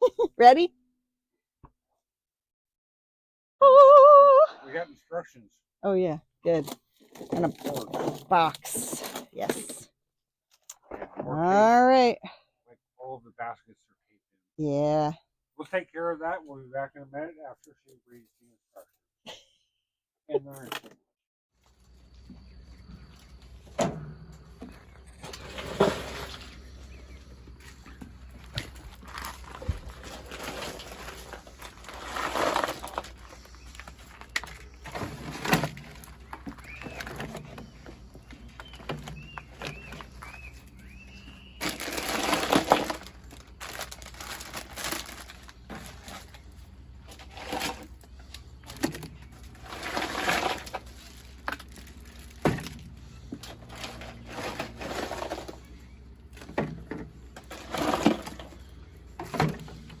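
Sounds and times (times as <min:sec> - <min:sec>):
rustling and scraping: 0:06.6 - 0:09.8, 0:21.6 - 1:00.0.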